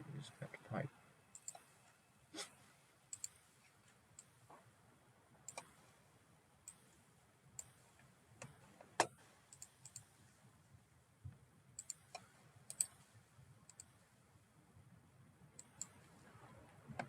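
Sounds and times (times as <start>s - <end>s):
computer mouse clicking: 1.3s - 1.9s, 3.1s - 4.4s, 5.4s - 6.0s, 6.6s - 7.0s, 7.6s - 10.2s, 11.8s - 14.0s, 15.6s - 17.0s.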